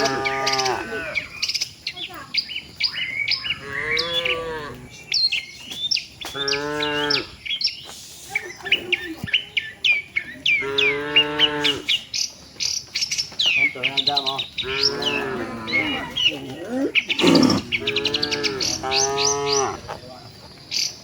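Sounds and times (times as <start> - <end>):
cattle mooing: 0.0 - 1.3, 3.6 - 4.9, 14.6 - 20.1
small birds chirping: 0.0 - 21.0.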